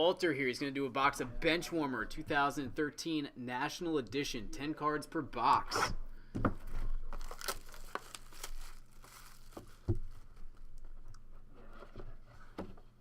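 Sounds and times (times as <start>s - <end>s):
plastic wrapping crinkling: 6.6s - 11.2s.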